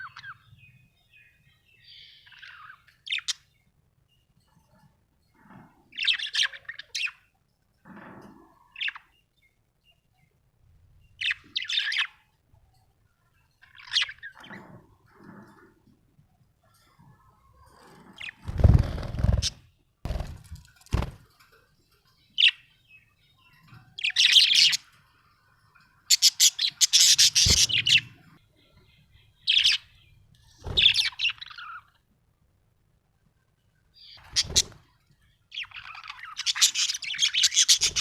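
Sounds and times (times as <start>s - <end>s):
budgerigar chirping: 26.1s - 28.2s.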